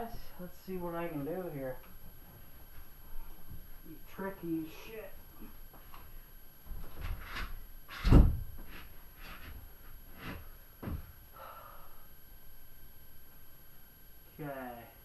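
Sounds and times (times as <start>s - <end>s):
heavy thump: 6.7s - 8.8s, 10.8s - 11.2s.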